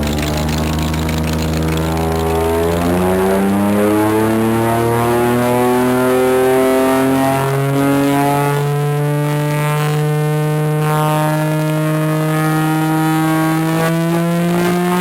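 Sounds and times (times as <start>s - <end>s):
air raid siren winding up: 0.0s - 10.8s.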